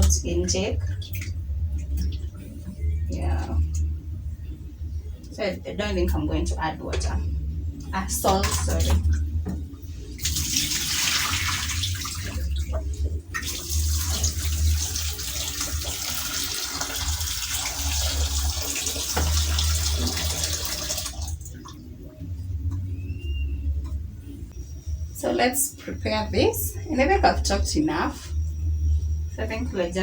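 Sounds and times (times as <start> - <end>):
tap water running into sink: 8.3 - 21.5.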